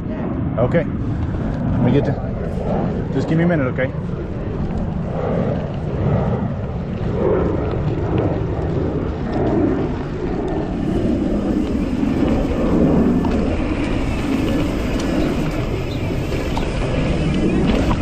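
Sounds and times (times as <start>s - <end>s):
wind rumble over microphone: 0.0s - 18.0s
tyres on dirt: 8.6s - 18.0s.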